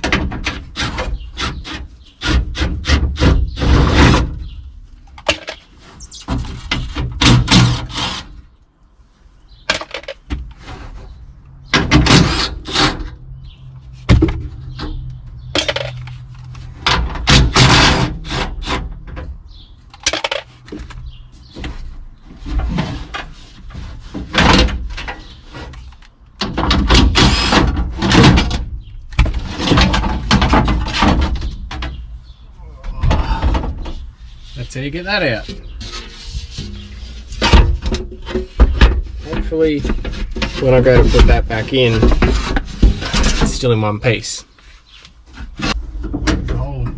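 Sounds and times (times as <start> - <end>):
metal car door parts rattling: 0.0 - 1.4, 2.3 - 7.9, 9.6 - 10.7, 11.6 - 21.8, 22.4 - 32.4, 35.6 - 43.7.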